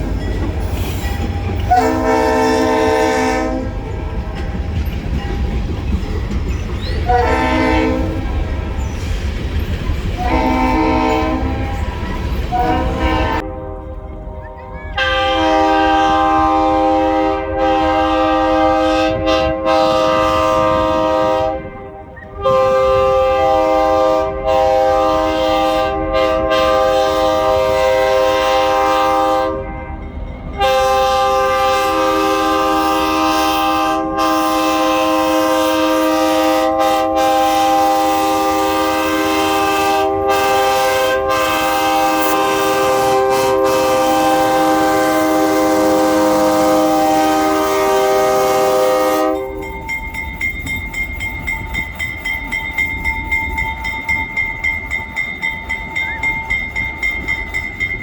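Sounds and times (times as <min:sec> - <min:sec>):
locomotive air horn blasts: 0:01.6 - 0:04.4, 0:07.0 - 0:08.3, 0:10.2 - 0:11.9, 0:12.5 - 0:30.0, 0:30.6 - 0:49.8.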